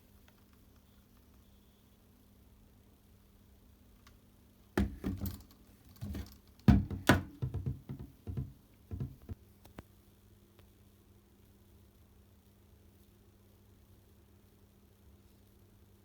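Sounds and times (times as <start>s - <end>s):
hard plastic clicking and knocking: 4.8s - 9.4s.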